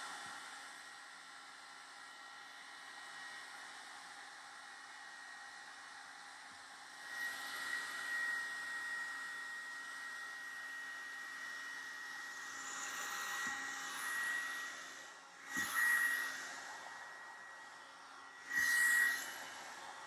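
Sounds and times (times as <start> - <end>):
hair dryer brush blowing: 6.1 - 20.0.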